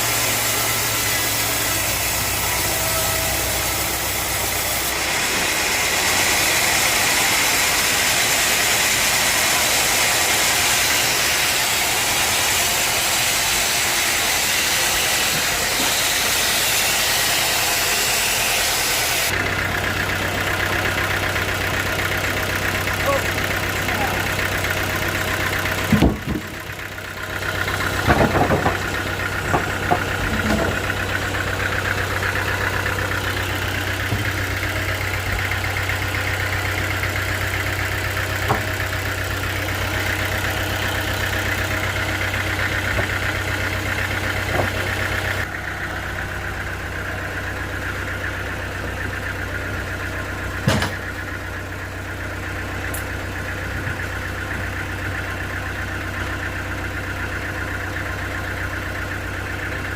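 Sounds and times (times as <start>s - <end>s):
sawmill engine running: 0.0s - 59.9s
sharp knocks: 25.9s - 26.6s.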